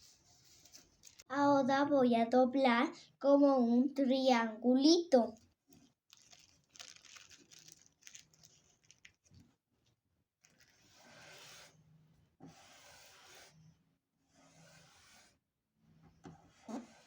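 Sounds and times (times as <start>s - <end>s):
tissue paper rustling: 0.0s - 1.3s, 5.8s - 9.4s, 10.4s - 11.4s.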